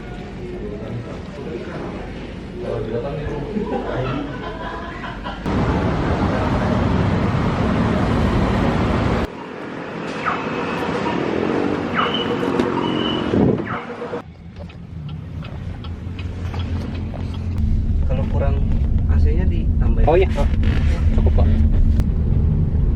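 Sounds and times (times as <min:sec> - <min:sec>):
car road and engine noise: 0:05.4 - 0:22.9.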